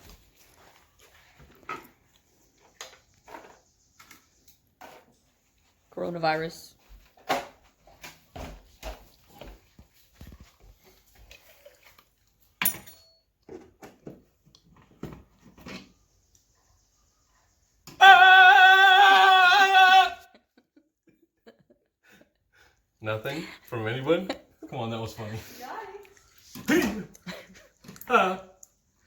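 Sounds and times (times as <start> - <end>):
wavering high cry: 17.9 - 20.4.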